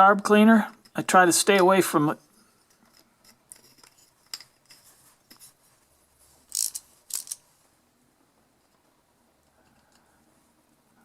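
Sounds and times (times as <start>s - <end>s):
small parts clicking and rubbing: 2.2s - 7.6s, 8.6s - 10.1s.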